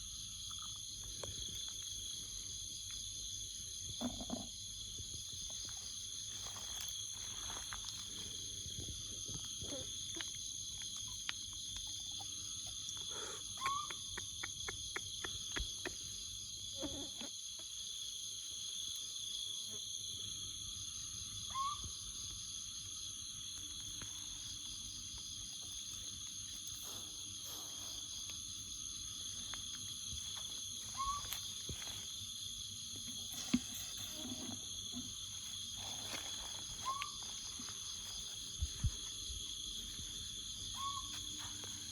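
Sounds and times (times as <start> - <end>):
insects buzzing: 0.0 - 41.9.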